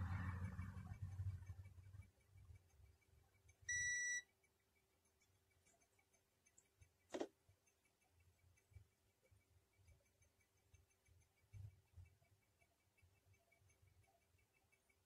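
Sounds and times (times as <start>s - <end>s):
high electronic beep: 3.7s - 4.3s.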